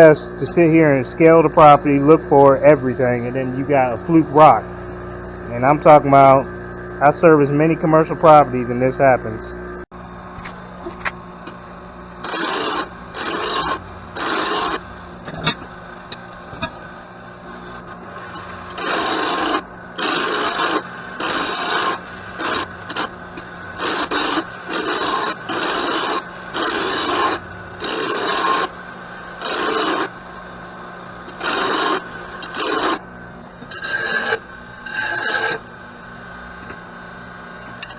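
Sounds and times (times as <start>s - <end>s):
file rasping on metal blade: 12.2s - 14.8s, 18.7s - 23.1s, 23.8s - 28.7s, 29.4s - 30.1s, 31.3s - 33.0s, 33.7s - 35.6s.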